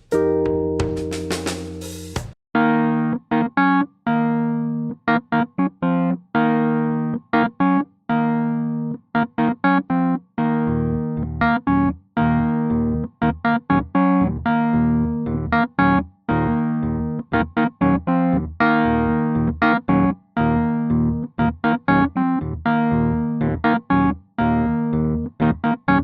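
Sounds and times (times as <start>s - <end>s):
electric piano playing chords: 0.0s - 26.0s
deep bass notes: 10.4s - 26.0s.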